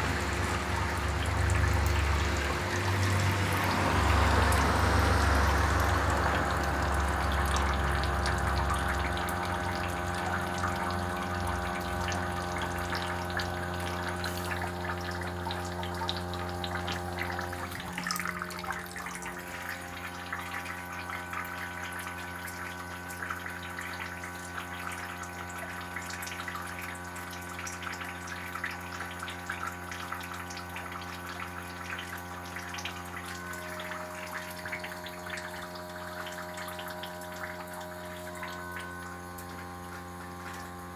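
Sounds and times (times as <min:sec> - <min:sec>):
air conditioner hum: 0:00.0 - 0:29.6
trickling water: 0:00.0 - 0:40.9.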